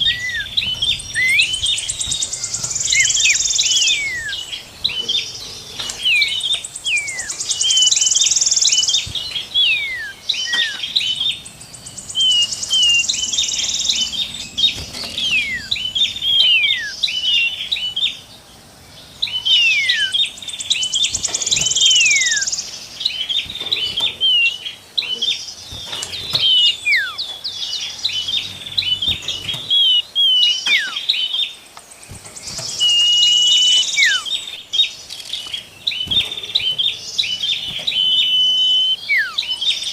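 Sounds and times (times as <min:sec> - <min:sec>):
fast high bird trill: 0:00.0 - 0:17.9, 0:19.4 - 0:31.3, 0:32.1 - 0:39.6
short bird chips: 0:00.0 - 0:18.2, 0:19.2 - 0:39.9
songbirds singing: 0:00.0 - 0:39.9
whistles sliding down: 0:32.8 - 0:34.3.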